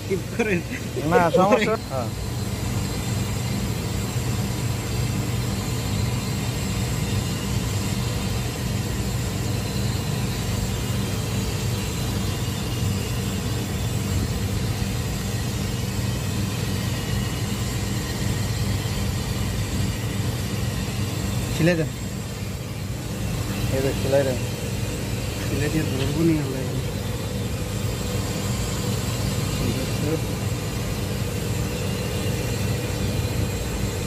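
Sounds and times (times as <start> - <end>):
machinery humming: 0.0 - 34.0.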